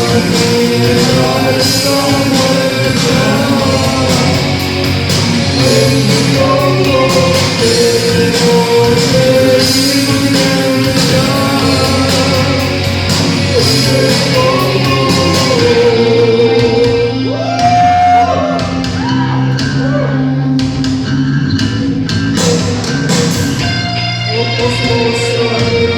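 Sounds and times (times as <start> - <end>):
singer holding long notes: 0.0 - 20.8
live band playing: 0.0 - 25.9.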